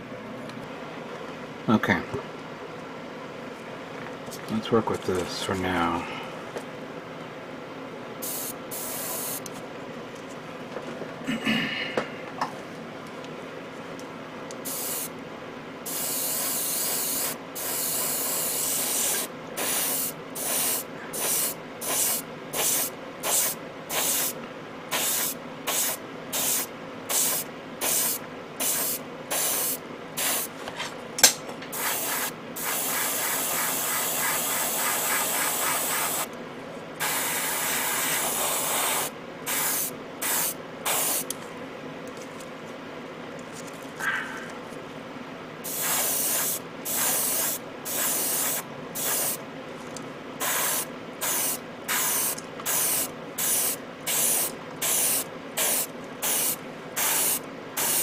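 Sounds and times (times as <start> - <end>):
airbrush hissing: 15.9 - 30.5, 31.8 - 36.3, 37.0 - 41.2, 45.7 - 49.4, 50.4 - 58.0
sharp click: 31.2 - 31.5.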